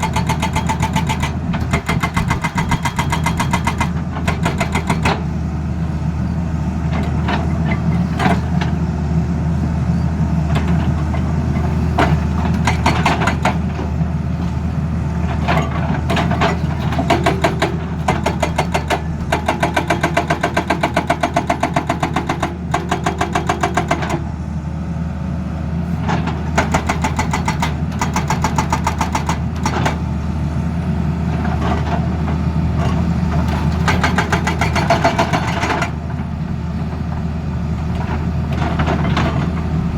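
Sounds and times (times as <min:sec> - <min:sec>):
hydraulic breaker hammering: 0:00.0 - 0:05.3, 0:26.6 - 0:30.0, 0:33.4 - 0:36.0
diesel engine droning: 0:29.4 - 0:39.9.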